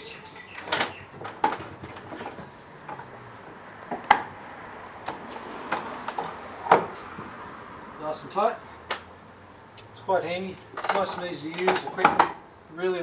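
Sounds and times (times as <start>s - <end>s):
vise clicks and knocks: 0.6s - 3.1s, 3.9s - 4.3s, 5.0s - 7.0s.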